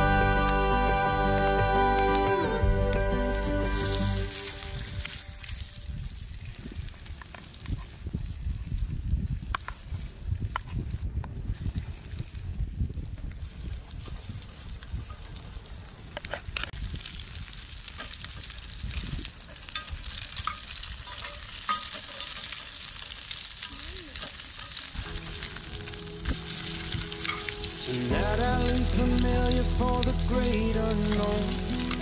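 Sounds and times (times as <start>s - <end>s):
background music: 0.0s - 5.1s, 25.0s - 32.0s
fire crackling and popping: 0.0s - 32.0s
food sizzling in a pan: 3.2s - 7.4s, 16.7s - 32.0s.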